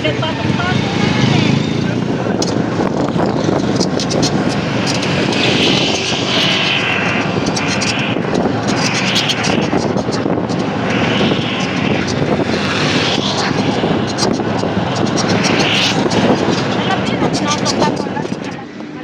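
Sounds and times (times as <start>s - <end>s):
wind on microphone: 0.0s - 18.8s
vehicles passing: 0.0s - 19.0s.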